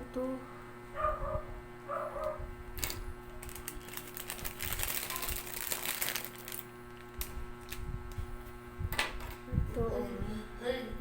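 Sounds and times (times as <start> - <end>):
steady electrical hum: 0.0 - 11.0
packaging crinkling: 2.8 - 7.8.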